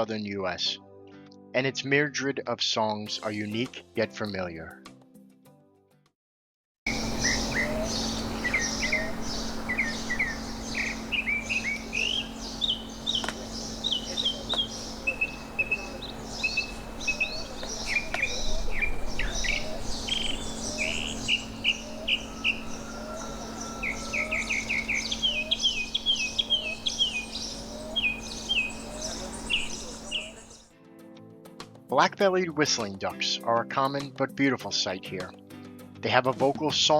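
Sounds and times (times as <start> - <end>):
mockingbird singing: 6.9 - 30.6
steady low hum: 6.9 - 30.6.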